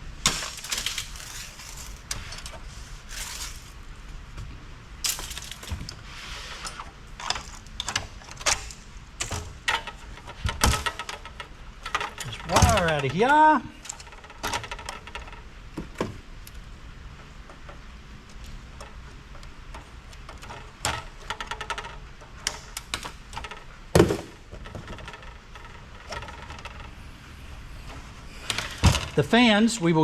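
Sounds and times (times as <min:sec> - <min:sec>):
clicks and knocks of parts and tools: 0:00.2 - 0:06.0, 0:06.6 - 0:27.0, 0:27.8 - 0:29.3.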